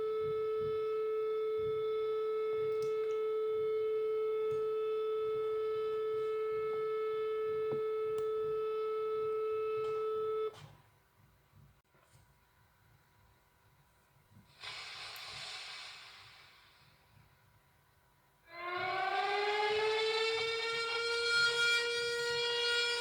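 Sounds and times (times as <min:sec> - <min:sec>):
emergency alert siren steady tone: 0:00.0 - 0:10.8, 0:18.4 - 0:23.0.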